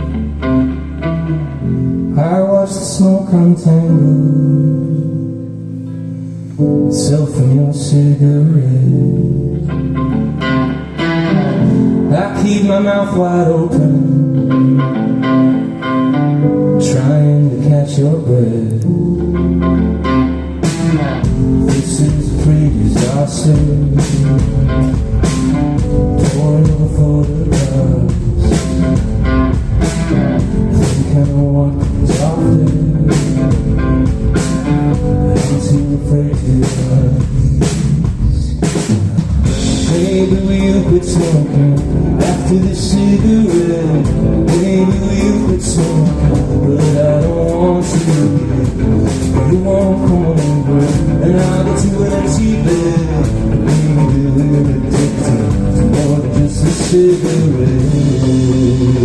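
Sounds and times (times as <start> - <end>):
guitar and bass: 0.0 - 59.0
person singing: 0.0 - 59.0
drum kit beat: 19.9 - 59.0.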